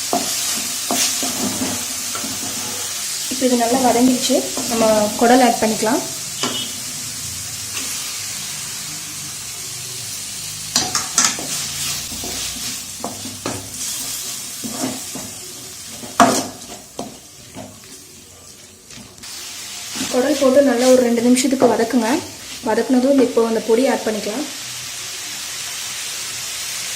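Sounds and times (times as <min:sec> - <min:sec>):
food sizzling in hot oil: 0:00.0 - 0:26.9
metal spoon scraping pan: 0:00.1 - 0:05.1, 0:19.0 - 0:21.8.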